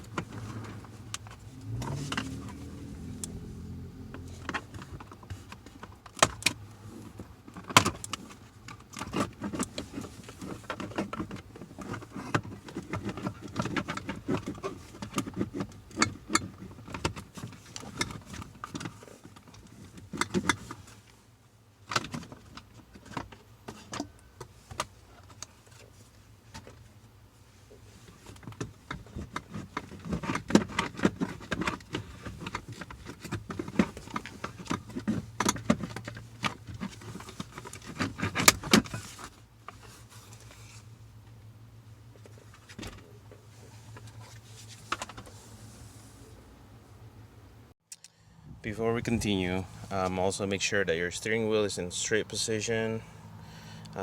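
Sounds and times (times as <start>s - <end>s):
screwdriver and screws rattling on plastic: 28.2s - 39.3s.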